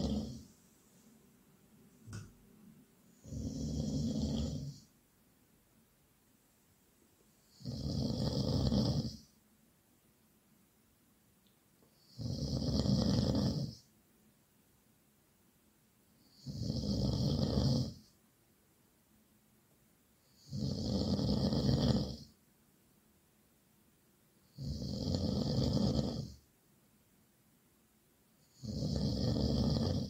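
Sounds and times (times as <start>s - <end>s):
loud snoring: 0.0s - 0.5s, 3.1s - 4.9s, 7.5s - 9.3s, 12.0s - 13.8s, 16.3s - 18.1s, 20.3s - 22.3s, 24.5s - 26.4s, 28.4s - 30.0s.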